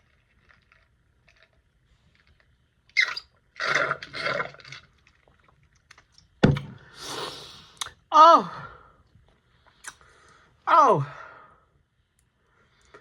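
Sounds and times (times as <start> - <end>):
person eating: 6.9 - 8.0
mouth clicks: 9.8 - 10.0.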